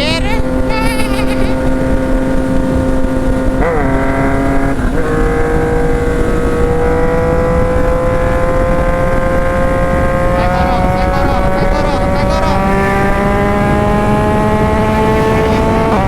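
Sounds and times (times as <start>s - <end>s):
motorcycle engine running: 0.0s - 16.0s.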